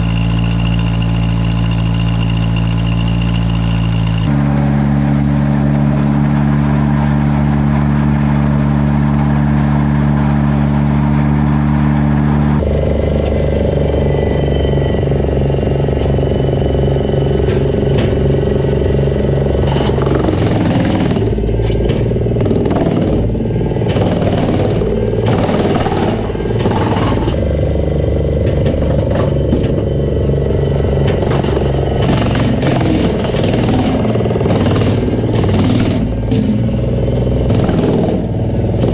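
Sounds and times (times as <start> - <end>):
wood chipper engine running: 0.0 - 38.9
knocks and clatters: 17.4 - 18.8, 19.6 - 27.5, 28.3 - 38.9.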